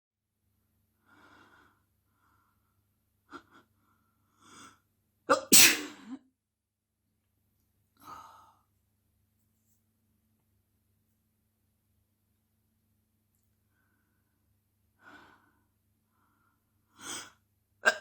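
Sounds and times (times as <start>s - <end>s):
person sneezing: 5.3s - 6.2s.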